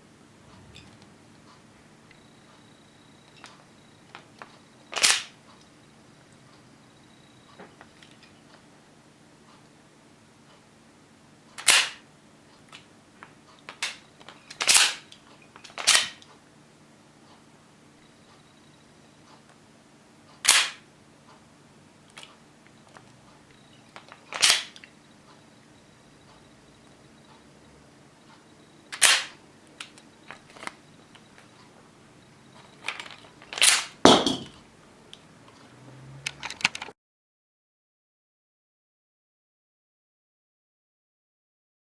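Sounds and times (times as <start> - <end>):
small clicks of parts: 3.3 - 5.7, 11.5 - 16.4, 20.3 - 21.4, 22.1 - 25.4, 28.3 - 31.7, 32.6 - 34.0, 35.1 - 36.9
toy pistol mechanism snapping shut: 5.0 - 5.4, 11.6 - 12.0, 13.8 - 15.1, 15.7 - 16.2, 20.4 - 20.8, 24.3 - 24.9, 28.9 - 29.4, 32.8 - 34.5.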